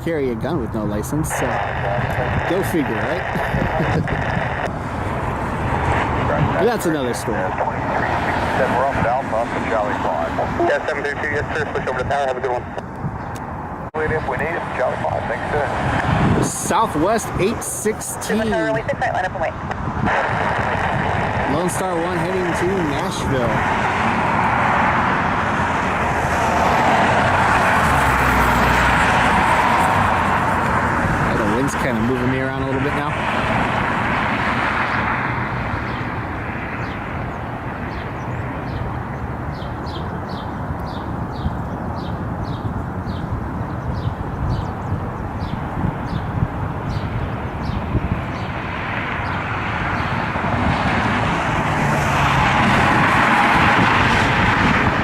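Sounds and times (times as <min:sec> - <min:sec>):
deep rumble: 0:00.0 - 0:17.6
jet aircraft engines rushing: 0:00.0 - 0:55.0
wind buffeting microphone: 0:00.0 - 0:55.0.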